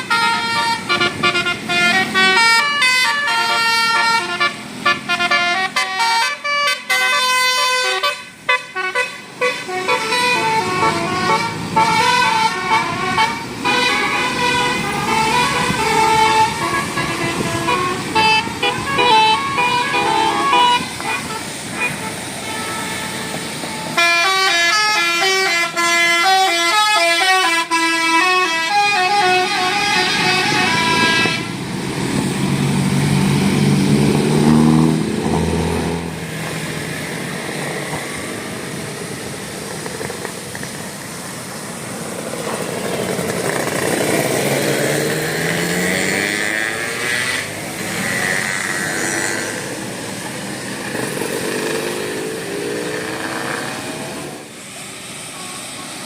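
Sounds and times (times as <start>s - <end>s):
bus musical horn playing a tune: 0.0s - 31.7s, 55.2s - 56.0s
bus engines passing: 0.0s - 56.0s.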